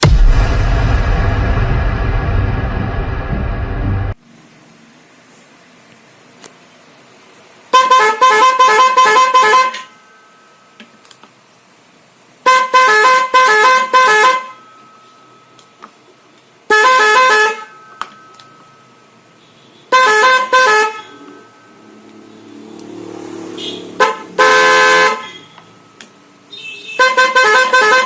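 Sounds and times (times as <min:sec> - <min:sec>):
warbling motorcycle air horn: 0:19.6 - 0:21.7, 0:23.5 - 0:25.8, 0:26.5 - 0:28.0.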